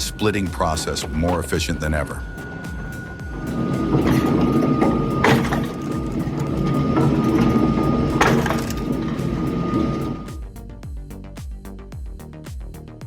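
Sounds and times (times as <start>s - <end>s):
log splitter whine: 0.0s - 10.4s.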